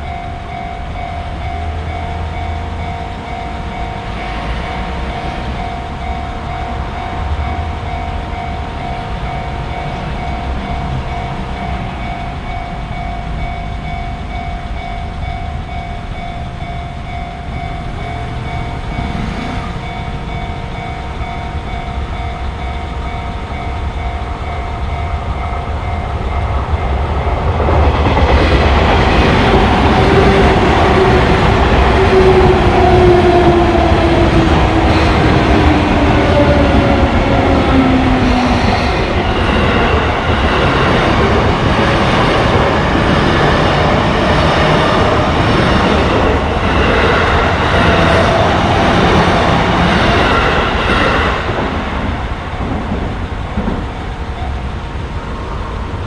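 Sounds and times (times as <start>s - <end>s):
electric train passing: 0.0s - 56.0s
rail noise: 0.0s - 56.0s.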